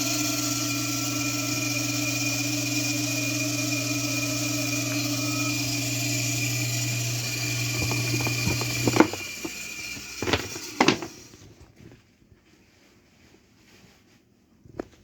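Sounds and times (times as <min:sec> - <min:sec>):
electric pump motor humming and whining: 0:00.0 - 0:11.6.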